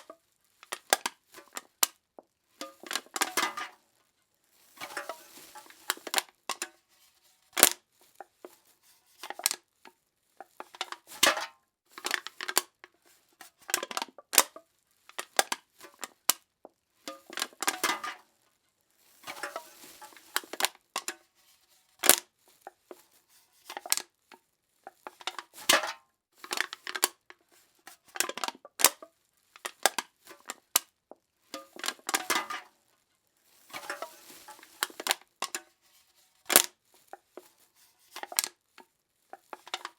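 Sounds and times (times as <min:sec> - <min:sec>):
aluminum cans being crushed: 0:02.6 - 0:03.8, 0:04.8 - 0:06.7, 0:10.4 - 0:12.8, 0:17.1 - 0:18.2, 0:19.2 - 0:21.2, 0:24.9 - 0:27.4, 0:28.0 - 0:30.8, 0:31.6 - 0:32.7, 0:33.6 - 0:35.7, 0:36.5 - 0:36.7, 0:38.2 - 0:38.6, 0:39.3 - 0:39.9.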